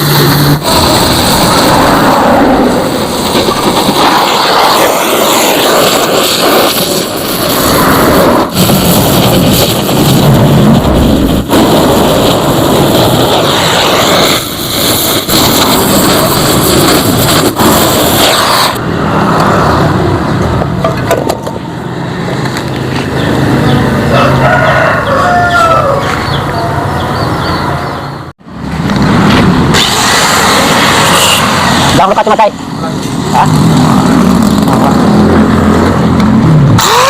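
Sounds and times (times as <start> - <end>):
loud harsh mechanical noise: 0.0 - 37.0
rooster crowing: 24.0 - 28.0.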